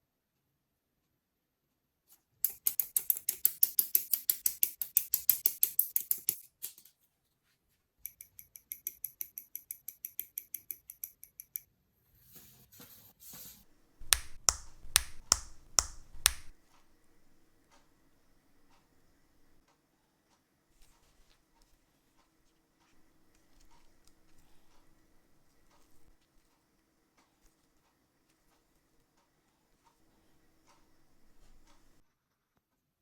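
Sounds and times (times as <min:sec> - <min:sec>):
plastic parts snapping together: 0:14.0 - 0:16.6
small plastic clicks: 0:14.0 - 0:16.6.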